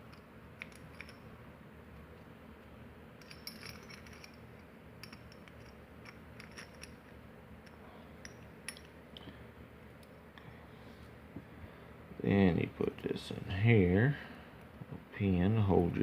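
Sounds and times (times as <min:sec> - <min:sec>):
padlock parts clicking and clinking: 0:00.1 - 0:01.3, 0:03.2 - 0:09.0.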